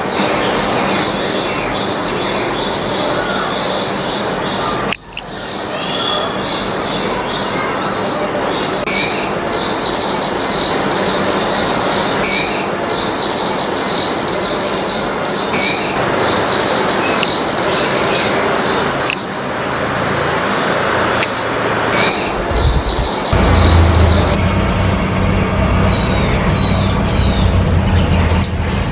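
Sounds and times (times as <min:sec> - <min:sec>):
small birds chirping: 0:00.0 - 0:24.8
vehicle engine hum: 0:16.0 - 0:28.9.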